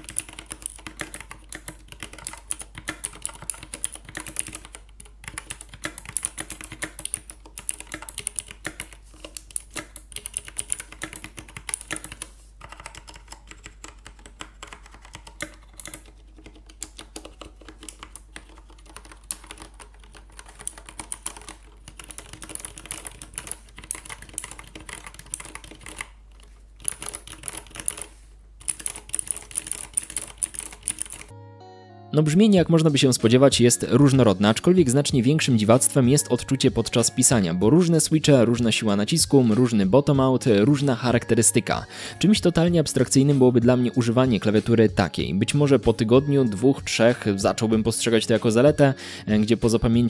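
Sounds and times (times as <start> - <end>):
fast typing on mechanical keyboard: 0.0 - 31.3.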